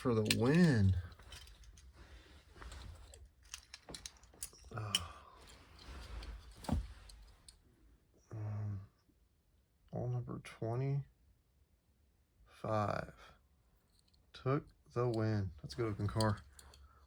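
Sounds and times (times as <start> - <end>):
toy cars clicking and clattering: 0.0 - 1.9.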